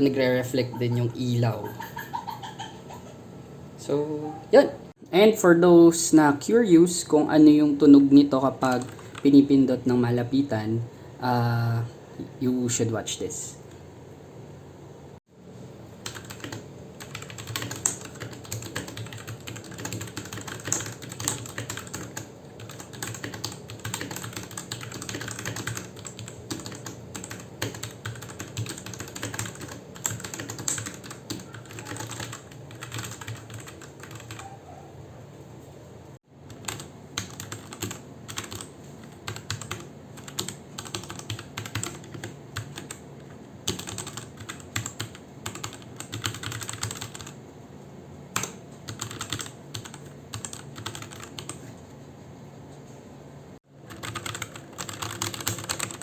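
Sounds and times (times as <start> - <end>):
mechanical keyboard typing: 8.6 - 9.3, 16.0 - 34.4, 36.5 - 43.0, 43.6 - 47.4, 48.4 - 51.6, 53.9 - 56.0.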